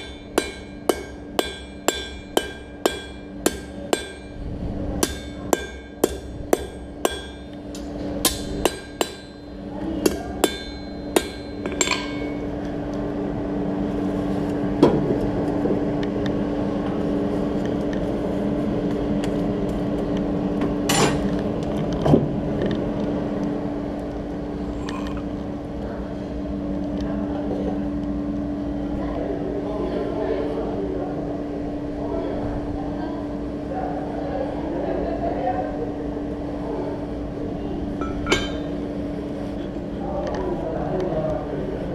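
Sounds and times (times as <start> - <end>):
hammer striking iron on anvil: 0.0 - 4.4, 5.0 - 12.5, 38.0 - 38.7
steady mechanical hum: 0.0 - 41.9.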